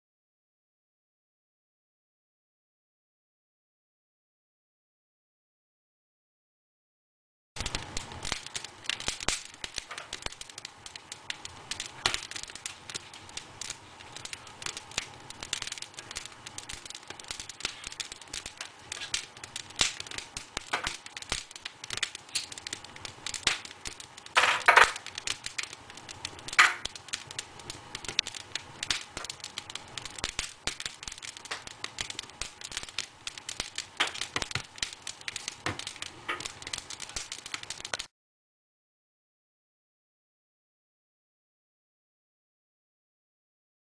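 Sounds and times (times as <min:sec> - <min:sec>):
wood fire crackling and popping: 0:07.6 - 0:38.1.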